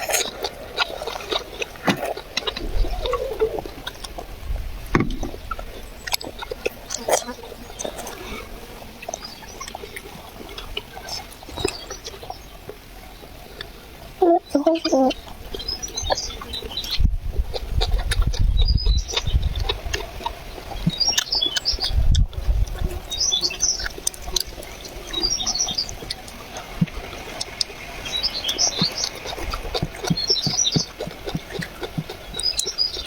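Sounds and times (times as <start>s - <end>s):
small birds chirping: 0.0s - 4.2s, 5.1s - 33.0s.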